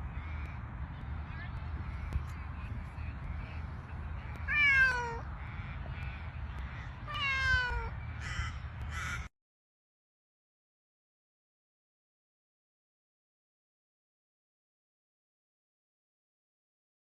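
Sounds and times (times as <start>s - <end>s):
cat meowing: 4.5s - 5.2s, 7.1s - 7.9s.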